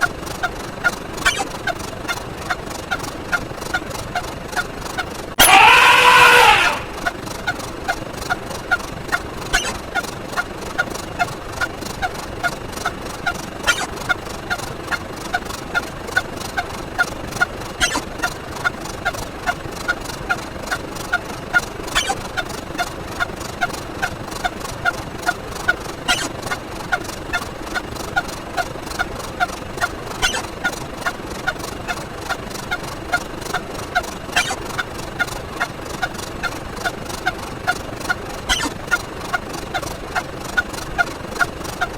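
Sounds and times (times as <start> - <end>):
sharp click: 0.8 - 2.2
repeated short sound effect: 1.2 - 1.8, 9.5 - 10.0, 13.6 - 14.0, 17.8 - 18.3, 21.9 - 22.4, 26.1 - 26.5, 30.2 - 30.7, 34.3 - 34.8, 38.5 - 39.0.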